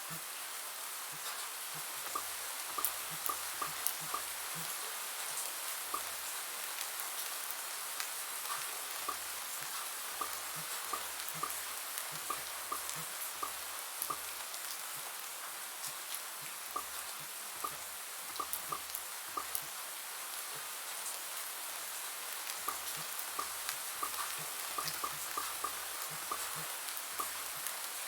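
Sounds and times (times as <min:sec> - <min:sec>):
steady rain hiss: 0:00.0 - 0:28.0
bubble-pop sound effects: 0:16.8 - 0:19.7.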